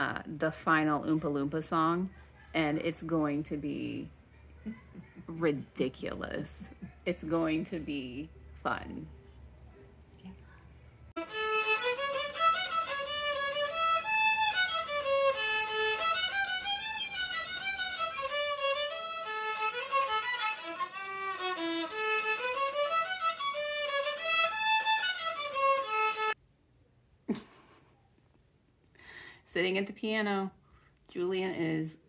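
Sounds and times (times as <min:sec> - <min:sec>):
violin melody: 0:11.2 - 0:26.4.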